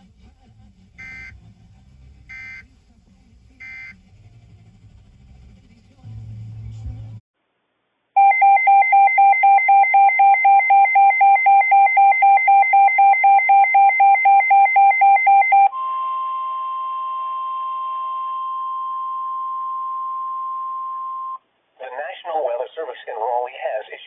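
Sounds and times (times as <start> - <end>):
pulsing two-pitch electronic alarm: 1.0 - 1.3
steady single alarm tone: 8.2 - 21.4.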